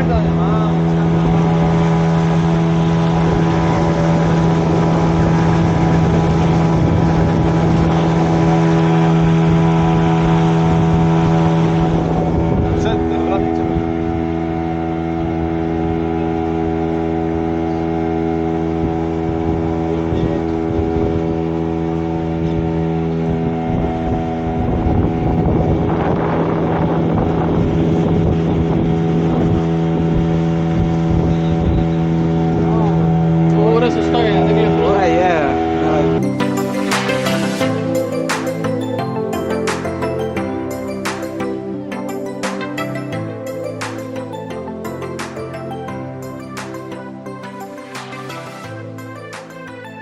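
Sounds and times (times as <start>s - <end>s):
rushing wind: 0.0s - 38.2s
boat engine running: 0.0s - 50.0s
rushing water: 0.0s - 50.0s.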